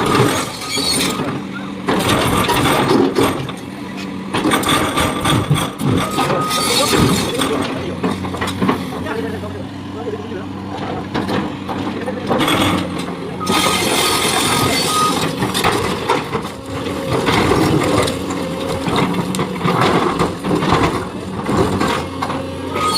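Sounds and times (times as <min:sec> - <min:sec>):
excavator diesel engine: 0:00.0 - 0:22.9
high beeps: 0:13.4 - 0:13.8, 0:14.8 - 0:15.2
rocks rattling and clattering: 0:13.9 - 0:22.5.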